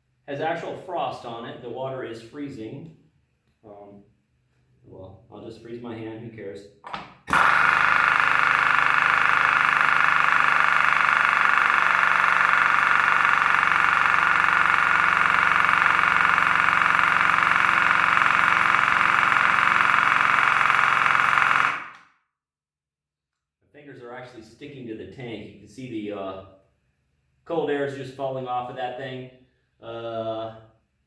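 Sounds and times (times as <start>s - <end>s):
pneumatic air hammer hammering: 6.9s - 22.0s.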